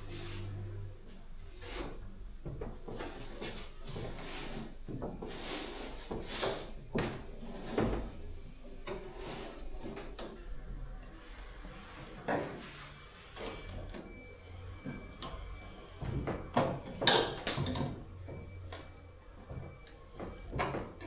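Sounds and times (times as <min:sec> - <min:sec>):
knocks and scrapes on boat hull: 0:01.6 - 0:08.2.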